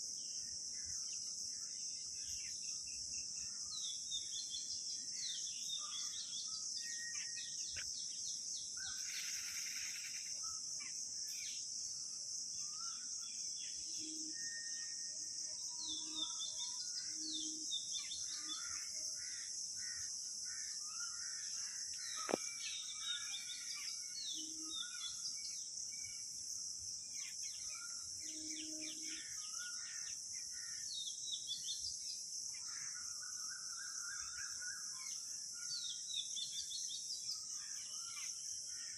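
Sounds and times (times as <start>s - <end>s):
high-pitched insect drone: 8.8s - 30.9s.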